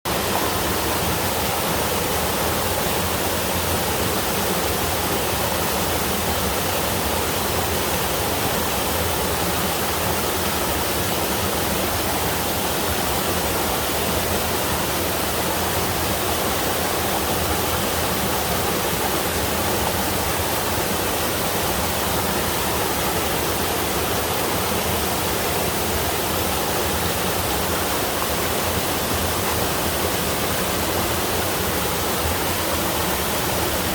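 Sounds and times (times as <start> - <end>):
waterfall water pouring and splashing: 0.1 - 33.9.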